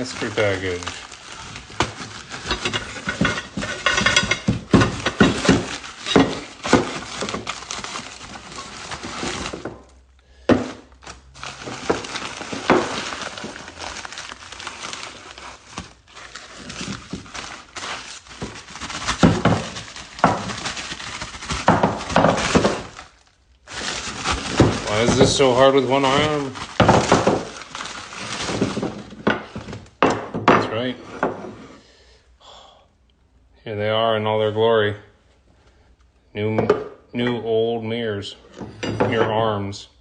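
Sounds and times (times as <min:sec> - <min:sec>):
packaging rustling and tearing: 0:00.0 - 0:10.0, 0:10.6 - 0:30.0
hard objects knocking and clinking: 0:01.8 - 0:07.5, 0:26.1 - 0:27.6.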